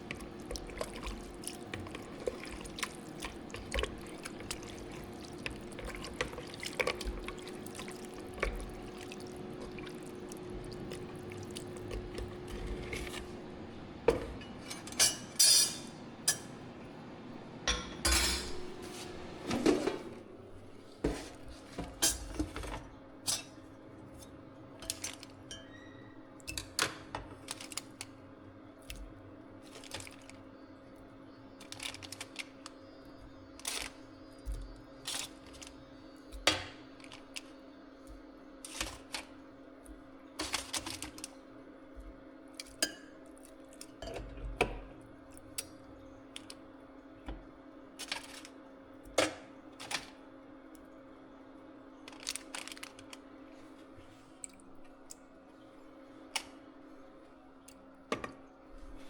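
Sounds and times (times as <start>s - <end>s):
steady low hum: 0.0s - 26.6s
dishes and utensils clinking: 14.1s - 16.6s, 17.7s - 18.7s.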